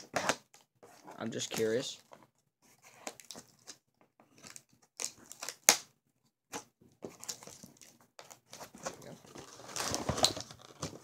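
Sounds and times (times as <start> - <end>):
toy packaging being handled: 7.0 - 11.0.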